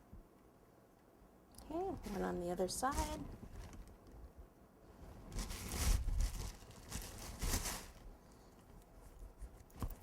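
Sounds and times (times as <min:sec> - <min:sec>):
hands rustling and rubbing fondant: 0:04.9 - 0:08.2.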